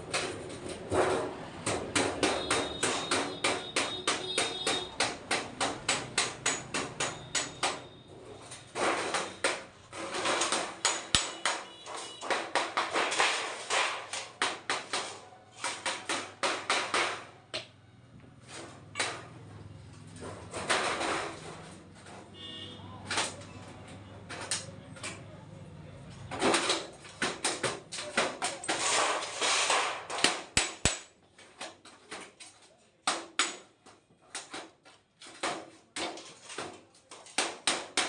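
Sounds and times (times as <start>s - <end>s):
rapid hammering strikes: 0.0s - 8.0s, 8.6s - 17.4s, 26.3s - 31.1s, 34.4s - 38.0s.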